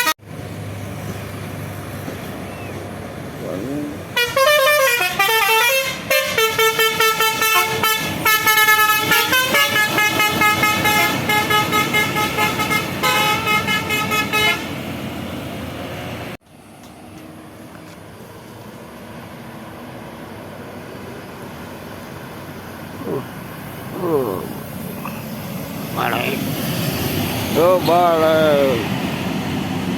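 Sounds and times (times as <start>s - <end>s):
bus engine running: 0.0s - 29.9s
multi-tone musical bus horn: 4.1s - 14.8s.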